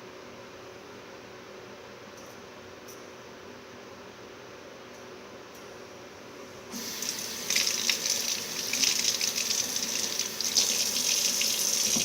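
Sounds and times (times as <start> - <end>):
water running into sink: 6.7 - 12.0.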